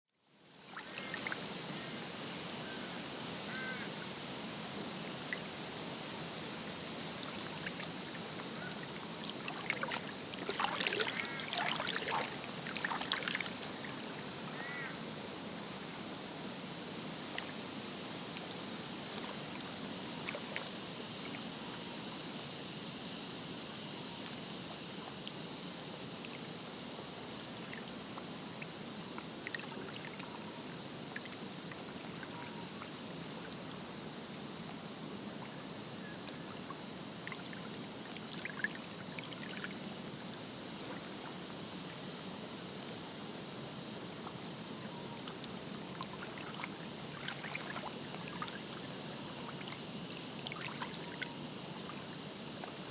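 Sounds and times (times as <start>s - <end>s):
water lapping and trickling: 0.6s - 1.9s, 6.5s - 15.2s, 18.3s - 22.2s, 24.2s - 43.0s, 43.8s - 52.9s.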